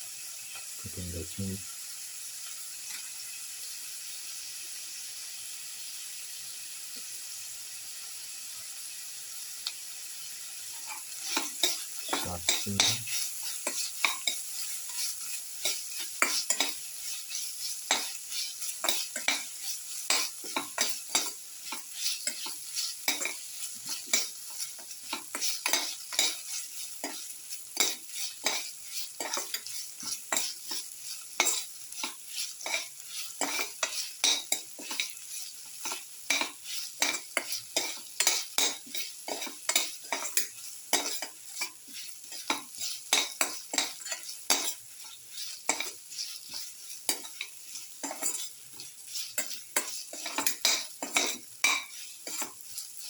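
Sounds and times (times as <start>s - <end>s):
food sizzling in oil: 0.0s - 53.0s
utensil scraping a pan: 10.7s - 53.0s.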